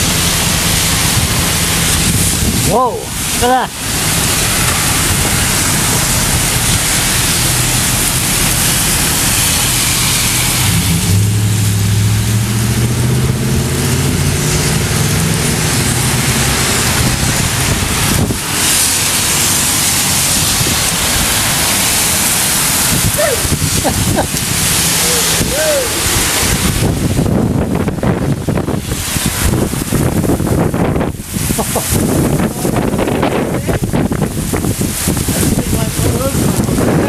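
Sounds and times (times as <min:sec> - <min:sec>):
low steady drone: 0:00.0 - 0:23.4
heavy wind and rain: 0:00.0 - 0:37.0
wind buffeting microphone: 0:00.0 - 0:37.0.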